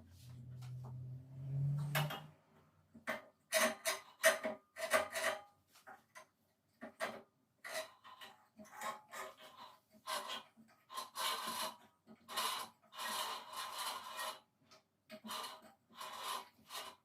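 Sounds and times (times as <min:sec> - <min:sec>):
low hum: 0:00.0 - 0:02.8
hands scraping and knocking on bandsaw: 0:03.0 - 0:06.2.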